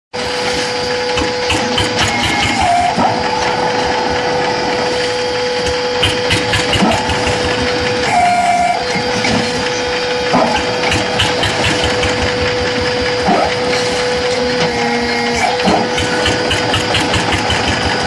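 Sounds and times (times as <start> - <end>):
block-making machine humming: 0.2 - 18.0
machine rattles and knocks: 1.2 - 2.7, 6.0 - 8.0, 10.4 - 14.3, 15.6 - 18.0.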